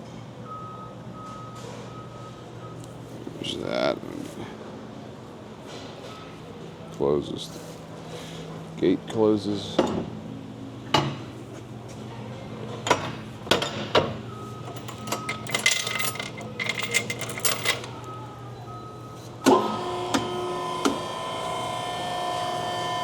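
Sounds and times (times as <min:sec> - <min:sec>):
metal clanks and rattles: 0:12.9 - 0:18.0
steady machine hum: 0:14.2 - 0:23.0.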